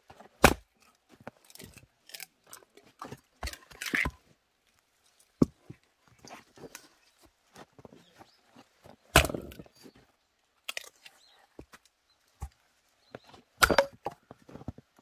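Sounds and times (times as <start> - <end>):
axe chopping firewood: 0.2 - 0.8, 9.1 - 9.7, 13.6 - 14.2.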